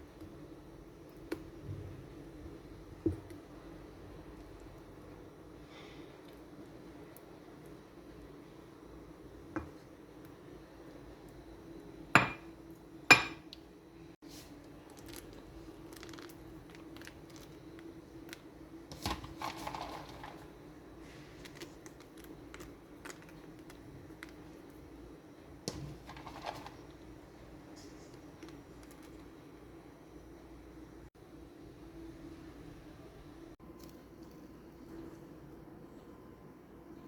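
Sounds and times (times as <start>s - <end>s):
dishes and utensils clinking: 13.1s - 13.5s.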